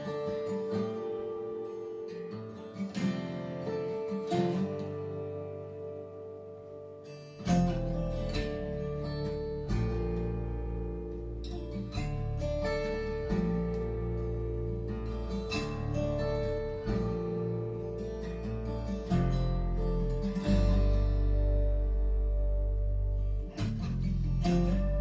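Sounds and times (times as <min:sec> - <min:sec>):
strummed acoustic guitar: 0:00.0 - 0:25.0
deep bass: 0:07.5 - 0:25.0.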